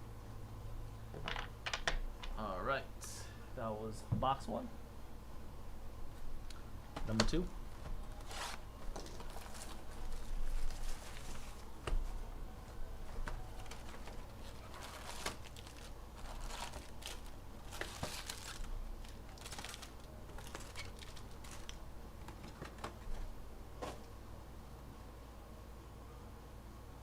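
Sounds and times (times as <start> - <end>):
plastic wrapping crinkling and tearing: 8.1 - 11.7, 13.1 - 23.2.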